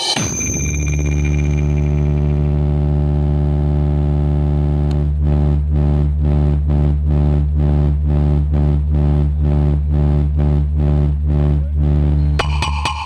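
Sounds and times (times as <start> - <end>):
deep pulsing bass drone: 0.2 - 13.0.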